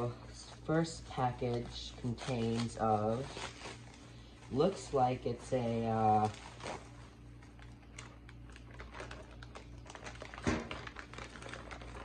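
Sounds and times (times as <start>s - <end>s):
steady low hum: 0.0s - 12.0s
package rustling and clicking: 6.1s - 12.0s.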